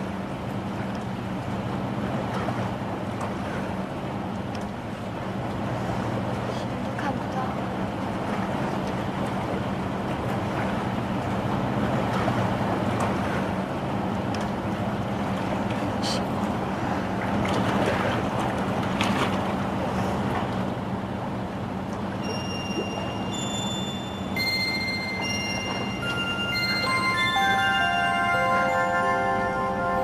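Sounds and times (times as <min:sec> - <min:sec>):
low even hum: 0:00.0 - 0:30.0
faint chime-like music: 0:22.2 - 0:30.0
rushing ambient noise: 0:22.8 - 0:30.0.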